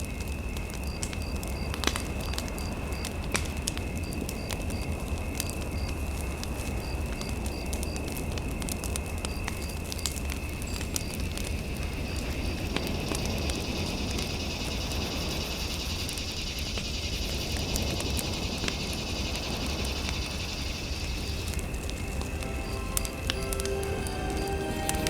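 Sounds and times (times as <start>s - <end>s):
fire crackling and popping: 0.0s - 25.0s
faint high tone: 21.6s - 25.0s.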